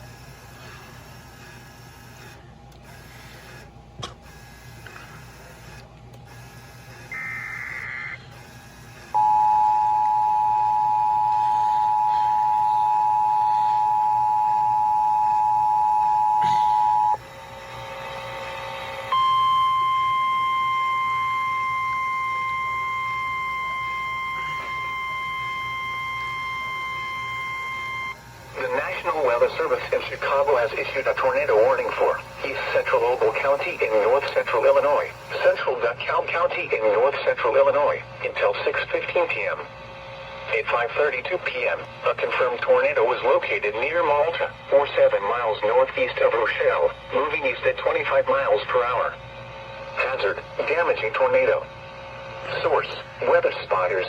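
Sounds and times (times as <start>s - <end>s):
receiver hiss: 0.0s - 35.7s
steady warning tone: 0.0s - 54.0s
data burst: 7.0s - 8.2s, 19.1s - 35.6s
two-tone attention signal: 7.1s - 8.6s, 9.2s - 17.2s, 19.1s - 35.6s.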